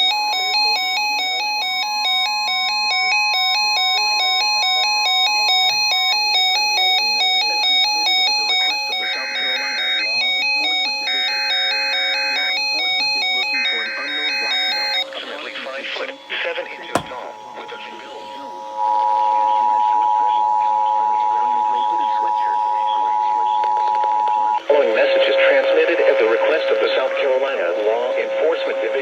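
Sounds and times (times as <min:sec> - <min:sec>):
steady high tone: 0:12.8 - 0:24.6.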